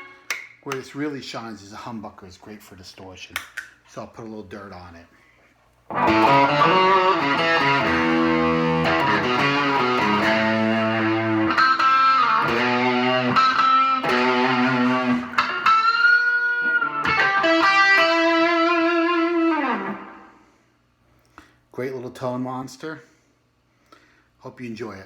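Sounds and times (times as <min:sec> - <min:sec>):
distorted electric guitar: 0:05.9 - 0:20.3.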